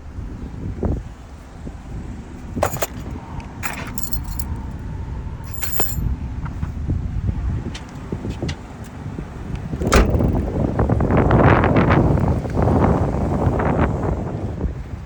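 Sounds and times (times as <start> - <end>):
steady low rumble: 0.0 - 13.1
metal keys jangling: 2.6 - 4.8, 5.4 - 6.1.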